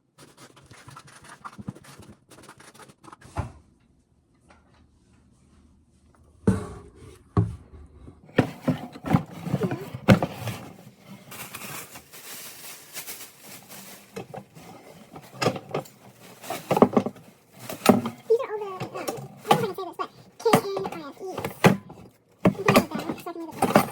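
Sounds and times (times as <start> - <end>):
kitchen items scraping: 6.5 - 23.9
kitchen items knocking: 8.3 - 23.9.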